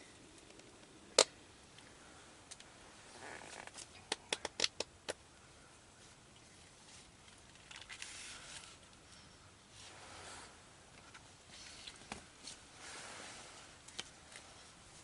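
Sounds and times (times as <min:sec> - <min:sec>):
soft rustle: 0:05.9 - 0:15.0.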